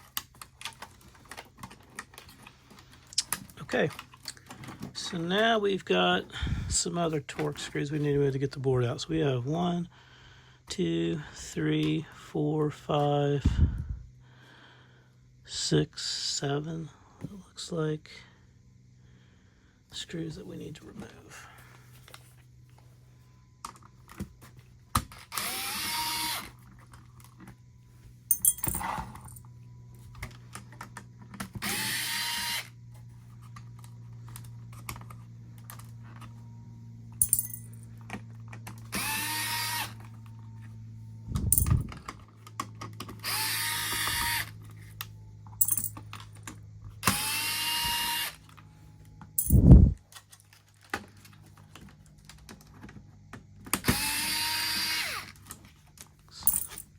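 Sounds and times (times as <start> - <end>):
electric screwdriver motor whine: 25.1 - 26.6, 31.5 - 32.8, 38.8 - 40.2, 43.1 - 44.6, 47.0 - 48.6, 53.8 - 55.4.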